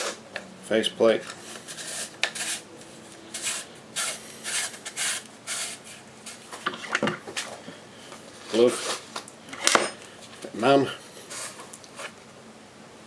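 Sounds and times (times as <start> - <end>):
rubbing scraping strokes: 1.4 - 6.5.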